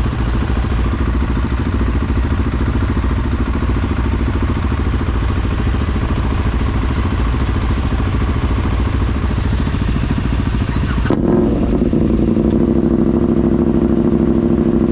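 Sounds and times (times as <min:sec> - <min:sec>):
off-road vehicle engine running: 0:00.0 - 0:14.9.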